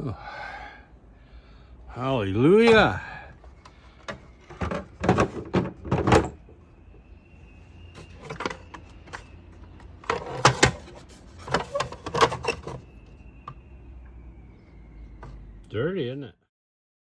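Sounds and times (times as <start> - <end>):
plastic parts knocking and scraping: 2.7 - 6.5, 8.0 - 13.1.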